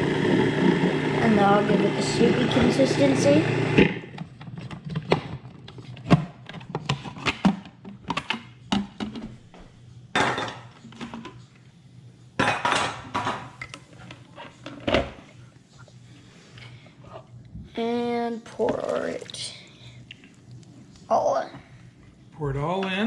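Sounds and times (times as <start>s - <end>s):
dishes and utensils clinking: 10.2s - 11.4s.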